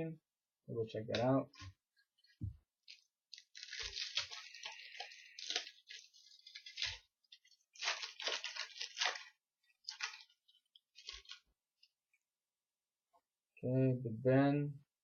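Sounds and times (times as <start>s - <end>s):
wrapper crinkling and tearing: 2.8s - 11.9s.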